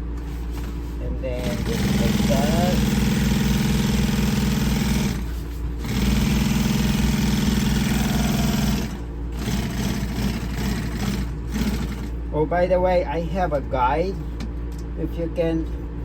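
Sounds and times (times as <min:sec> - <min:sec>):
sewing machine stitching: 0:01.4 - 0:12.1.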